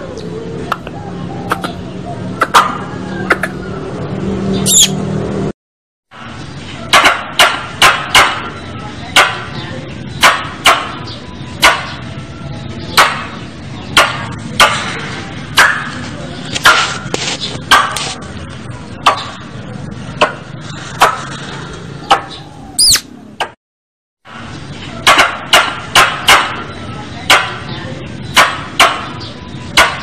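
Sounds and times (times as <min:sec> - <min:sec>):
squirrel chip calls: 0:00.2 - 0:03.6, 0:04.6 - 0:05.0, 0:22.2 - 0:23.1.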